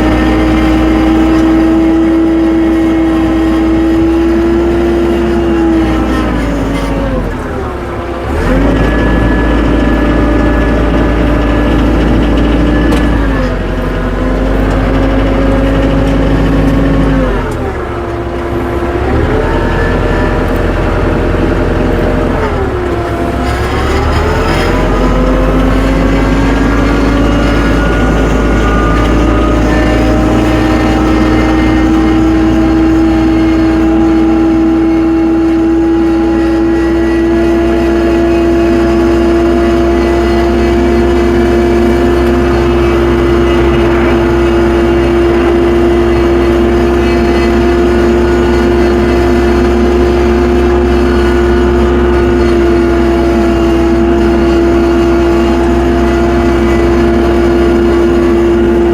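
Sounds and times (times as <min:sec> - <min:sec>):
tractor engine revving: 0:00.0 - 0:58.9.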